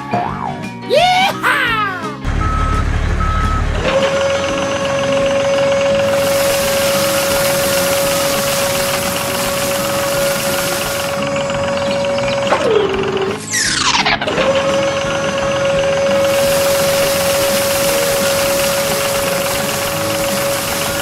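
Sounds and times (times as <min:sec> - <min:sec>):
low engine rumble: 0:02.2 - 0:21.0
motor whine: 0:02.2 - 0:21.0
reversing beeps: 0:02.3 - 0:04.0
hissing noise: 0:05.7 - 0:14.2, 0:16.1 - 0:21.0.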